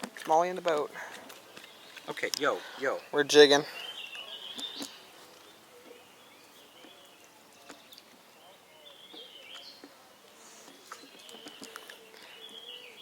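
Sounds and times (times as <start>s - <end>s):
faint bird chirps: 2.8s - 9.9s, 10.7s - 13.0s.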